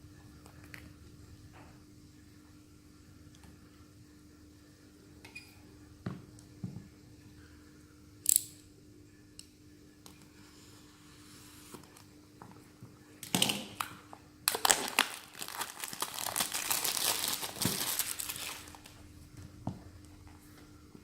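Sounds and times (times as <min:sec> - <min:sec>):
packaging crinkling: 0:13.8 - 0:19.0.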